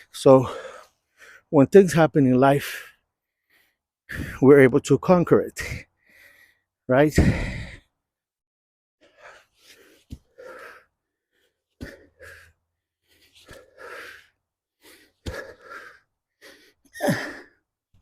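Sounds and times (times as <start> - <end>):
heavy effortful breathing: 0.0 - 1.5, 2.6 - 4.4, 5.6 - 7.9, 9.0 - 17.6.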